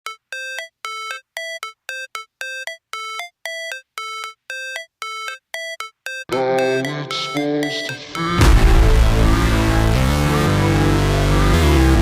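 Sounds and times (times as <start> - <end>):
backing music with bass: 8.2 - 12.0.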